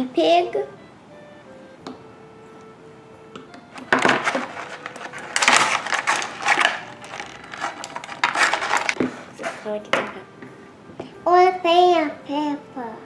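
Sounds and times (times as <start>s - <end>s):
plastic packaging crinkling: 3.8s - 9.8s.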